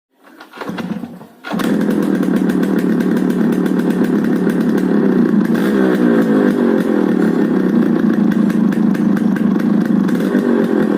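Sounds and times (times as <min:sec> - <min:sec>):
two-stroke engine putter: 0:00.4 - 0:10.9.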